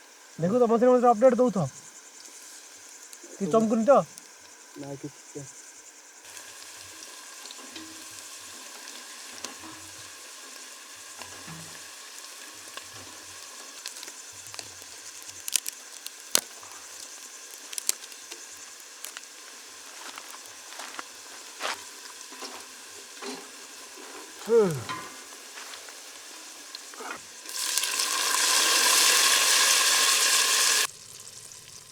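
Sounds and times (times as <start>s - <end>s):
masala sizzling in a pan: 0.0s - 31.9s
stirring in a pan: 6.3s - 28.1s.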